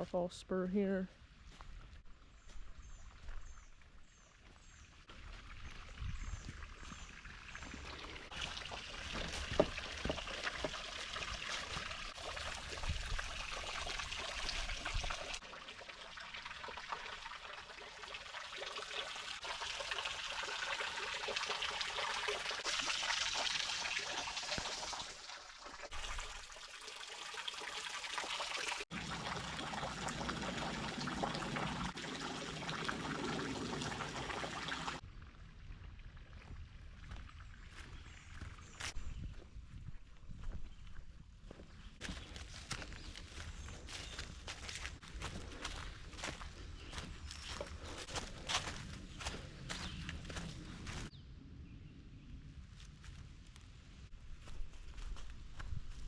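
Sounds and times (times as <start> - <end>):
water trickling over rock: 3.1 - 38.9.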